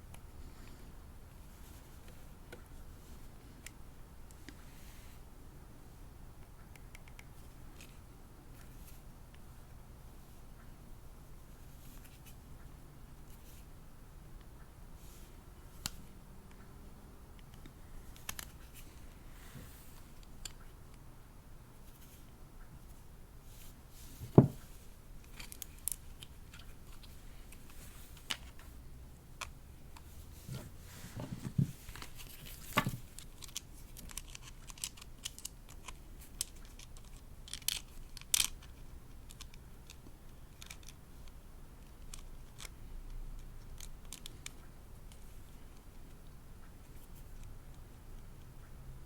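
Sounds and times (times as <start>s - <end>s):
hands handling plastic doll: 23.5s - 28.7s, 29.4s - 42.7s.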